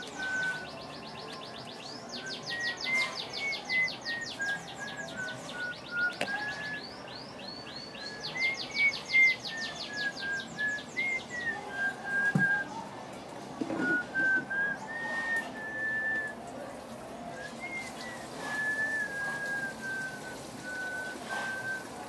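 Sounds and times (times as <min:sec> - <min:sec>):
slow whistle-like melody: 0:00.0 - 0:00.8, 0:08.0 - 0:12.8, 0:13.8 - 0:16.4, 0:17.3 - 0:22.0
small birds chirping: 0:00.0 - 0:22.0.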